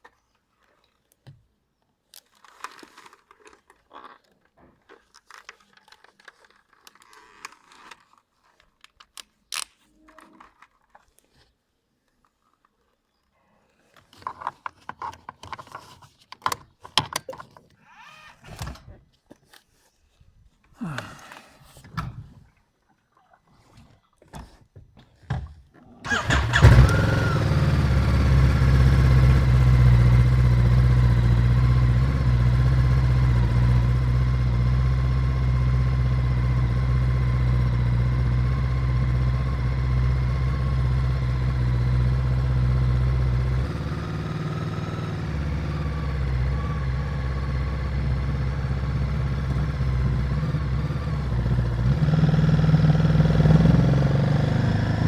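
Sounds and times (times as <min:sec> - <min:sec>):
motorcycle engine starting and idling: 0:26.0 - 0:55.0.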